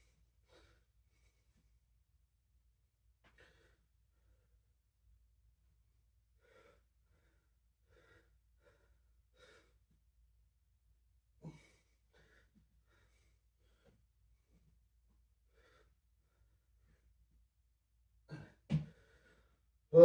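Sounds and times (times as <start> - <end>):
person breathing hard: 6.4 - 10.0, 11.4 - 14.6, 15.5 - 17.0, 18.3 - 19.6.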